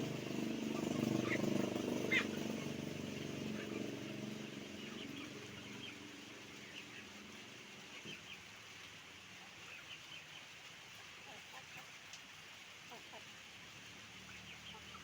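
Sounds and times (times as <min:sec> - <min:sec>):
vehicle engine hum: 0:00.0 - 0:08.2
chickens clucking: 0:00.0 - 0:08.5, 0:10.9 - 0:12.0, 0:12.8 - 0:13.4.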